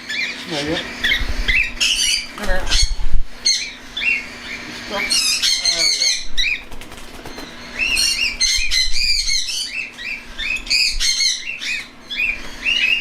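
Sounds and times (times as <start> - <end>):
cockatiels chirping: 0.0 - 13.0
wings flapping: 6.4 - 8.1.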